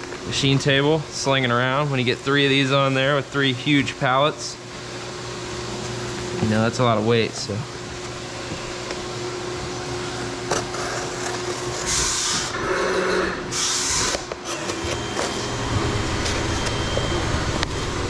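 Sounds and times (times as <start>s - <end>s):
machine mechanical hum: 0.0s - 18.0s
loud hissing bursts: 11.8s - 14.3s.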